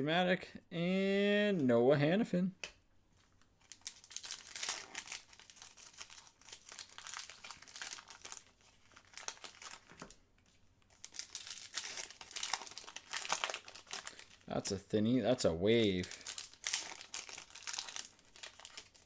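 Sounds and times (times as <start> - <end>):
card pack wrapper crinkling and tearing: 3.6 - 10.2, 10.9 - 14.5, 15.4 - 19.0.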